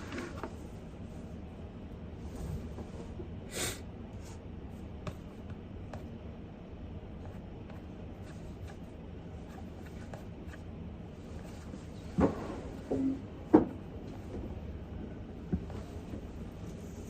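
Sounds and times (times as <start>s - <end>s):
objects knocking and thumping: 12.1s - 14.5s.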